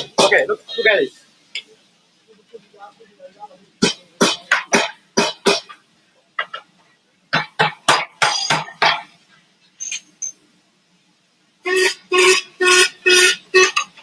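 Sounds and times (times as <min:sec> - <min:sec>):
welding noise bursts: 0:11.7 - 0:14.0.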